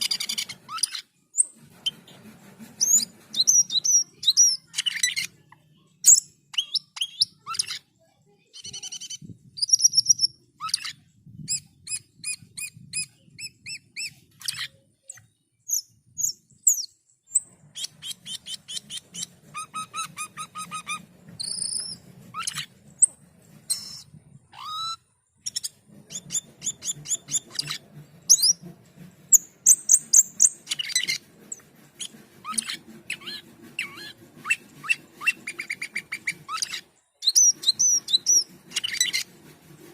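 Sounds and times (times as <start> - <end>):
starling singing: 8.6 - 28.7, 29.3 - 39.4.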